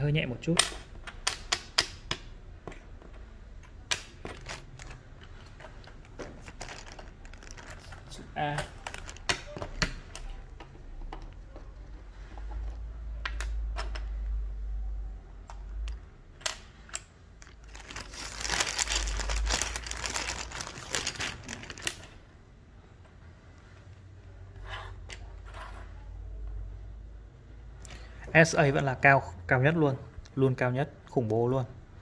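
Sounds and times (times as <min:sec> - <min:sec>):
keycaps clattering and rustling: 0:03.9 - 0:10.4, 0:16.4 - 0:22.2.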